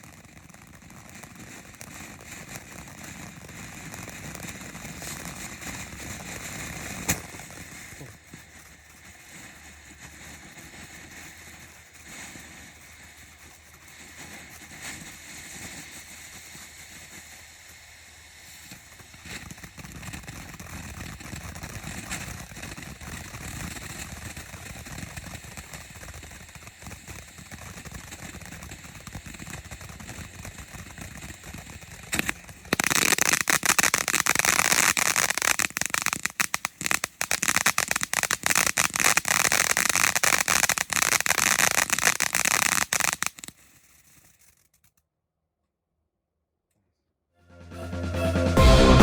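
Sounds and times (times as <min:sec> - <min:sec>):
firework fountain hissing and crackling: 0:00.0 - 0:44.6
sharp pop: 0:07.0 - 0:07.4.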